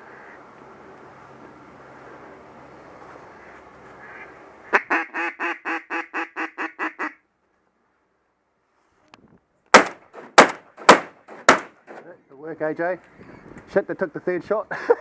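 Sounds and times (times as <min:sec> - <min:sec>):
duck quacking: 0:03.4 - 0:07.2
shotgun shot: 0:09.8 - 0:12.0.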